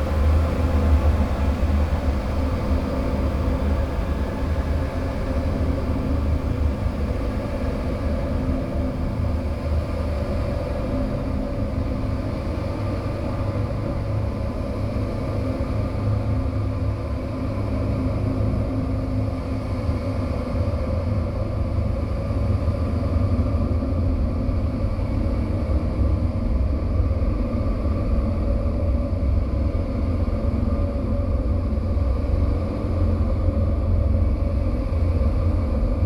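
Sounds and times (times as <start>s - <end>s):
low rumbling drone: 0.0s - 20.4s.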